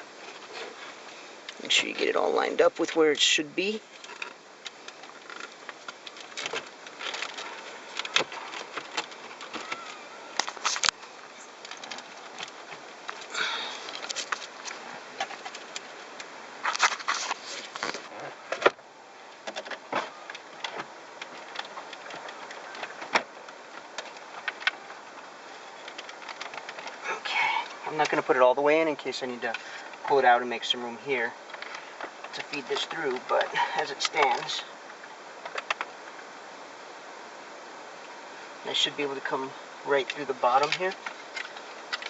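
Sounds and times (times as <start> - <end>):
plastic scraping rustles: 3.8 - 16.0, 16.6 - 18.8, 19.4 - 36.0.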